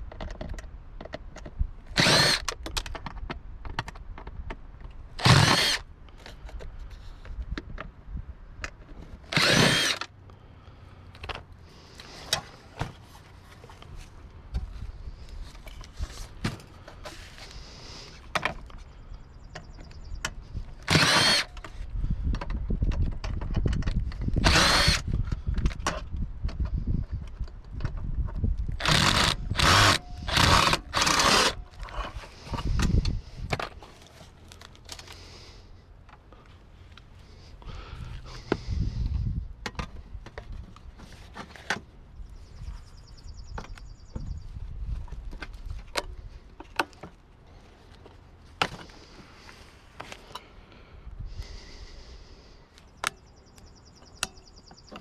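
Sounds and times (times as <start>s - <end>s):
power drill running: 1.9s - 2.5s, 5.2s - 5.8s, 9.3s - 10.1s, 20.8s - 21.6s, 24.4s - 25.0s, 28.8s - 31.6s.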